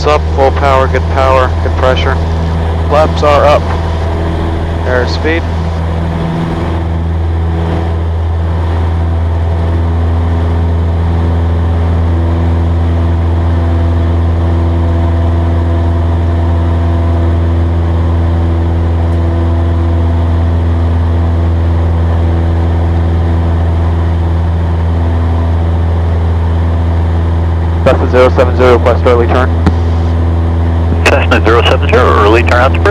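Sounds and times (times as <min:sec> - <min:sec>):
airplane engine and propeller drone: 0:00.0 - 0:32.9.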